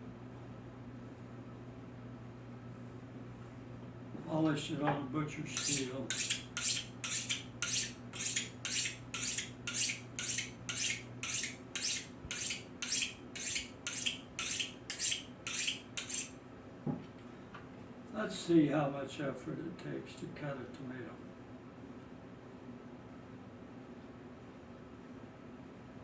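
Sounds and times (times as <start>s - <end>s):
knife scraping on sharpening steel: 5.6s - 16.4s.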